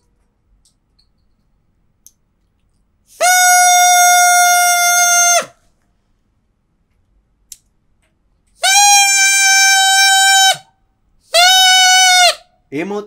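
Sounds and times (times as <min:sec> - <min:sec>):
drinking straw whistle: 0:03.1 - 0:05.6, 0:08.6 - 0:10.7, 0:11.3 - 0:12.5.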